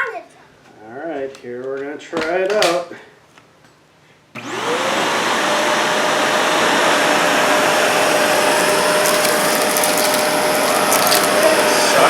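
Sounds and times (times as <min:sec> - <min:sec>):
vacuum cleaner motor whining: 0:04.4 - 0:12.0.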